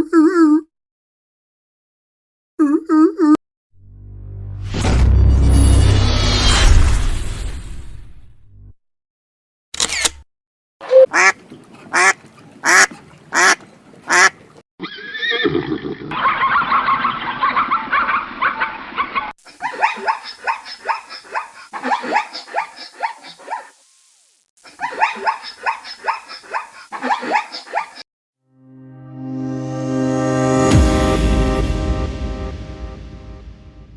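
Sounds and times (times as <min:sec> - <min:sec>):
ducks quacking rapidly: 0:11.1 - 0:14.4.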